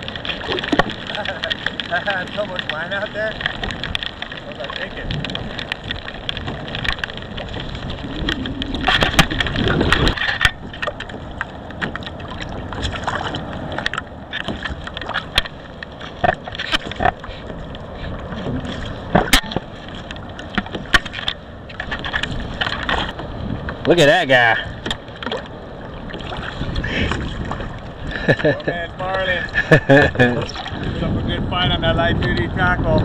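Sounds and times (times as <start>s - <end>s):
water sloshing against kayak hull: 0.0s - 33.0s
sharp clicks and knocks: 0.2s - 13.0s, 13.8s - 17.8s, 19.1s - 23.9s
wind noise on microphone: 3.3s - 25.3s, 25.9s - 33.0s.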